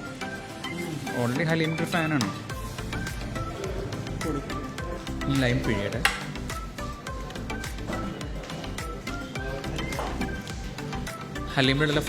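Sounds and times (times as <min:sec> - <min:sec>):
background music with steady beat: 0:00.0 - 0:12.0.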